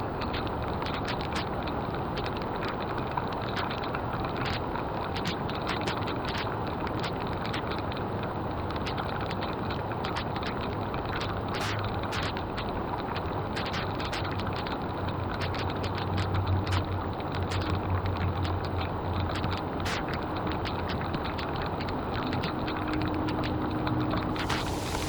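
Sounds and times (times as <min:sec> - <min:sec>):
sharp crackles and clicks: 0:10.1 - 0:12.6, 0:19.3 - 0:21.7, 0:24.4 - 0:25.0
water rushing into a drain: 0:24.4 - 0:25.0.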